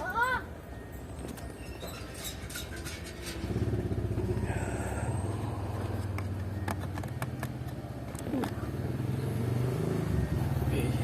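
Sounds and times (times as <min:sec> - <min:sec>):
engine running steadily: 0:03.1 - 0:09.4.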